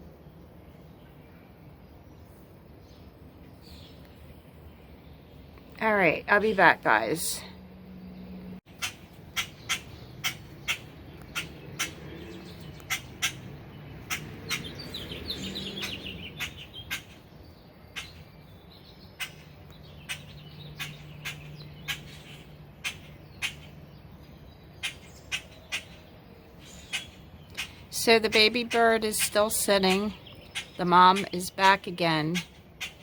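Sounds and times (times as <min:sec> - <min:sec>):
songbird alarm calls: 0:08.7 - 0:33.0.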